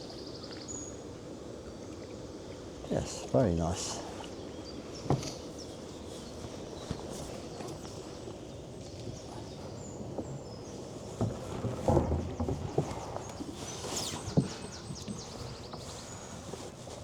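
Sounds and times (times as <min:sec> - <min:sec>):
canoe knocking and clunking: 0:09.1 - 0:15.9.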